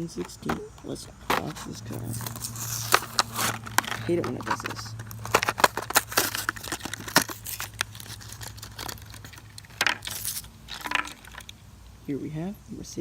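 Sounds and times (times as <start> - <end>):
steady low hum: 0.0 - 13.0
plastic packaging crinkling: 1.3 - 11.6.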